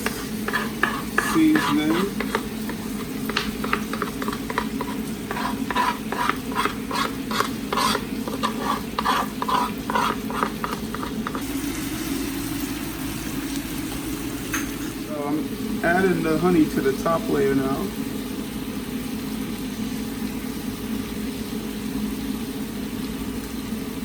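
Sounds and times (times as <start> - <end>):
utensil scraping a pan: 0.0 - 11.5
chicken frying in a pan: 0.0 - 24.0.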